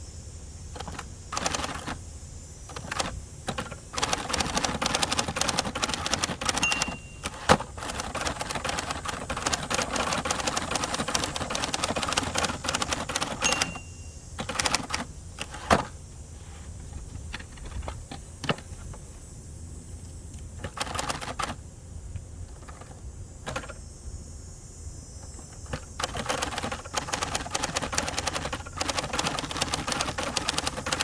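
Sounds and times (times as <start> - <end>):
manual typewriter keystrokes: 0.8 - 2.0, 2.7 - 16.0, 20.5 - 21.6, 22.5 - 23.8, 25.2 - 31.0.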